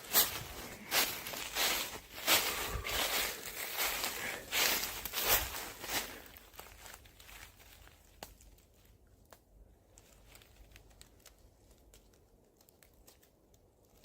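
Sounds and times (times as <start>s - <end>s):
small clicks and crackles: 6.2s - 14.0s.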